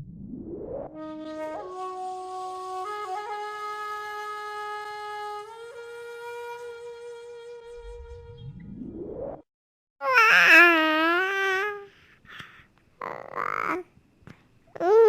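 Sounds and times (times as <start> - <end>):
held woodwind-like tone: 0.9 - 8.6
rising whoosh: 7.8 - 9.5.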